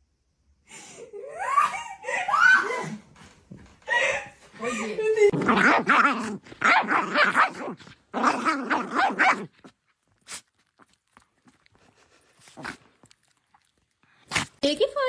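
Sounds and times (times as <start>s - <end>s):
dog barking and howling: 5.5s - 9.6s.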